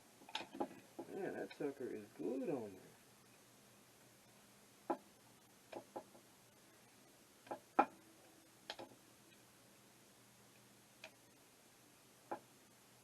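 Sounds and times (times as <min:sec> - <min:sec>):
small metallic clicks and taps: 0:08.7 - 0:09.4, 0:11.0 - 0:11.2.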